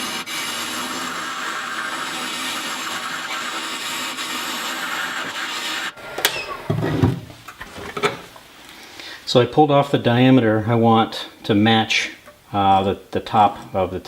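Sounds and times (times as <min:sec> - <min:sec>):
wood lathe tool scraping: 0:00.0 - 0:06.0.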